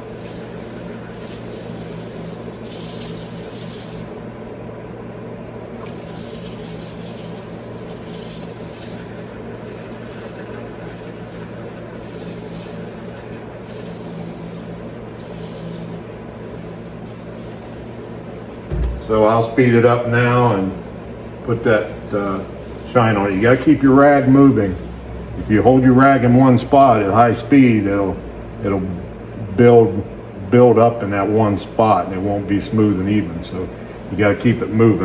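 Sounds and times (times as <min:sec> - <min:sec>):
rag swishing on spinning wood: 0:05.9 - 0:19.4.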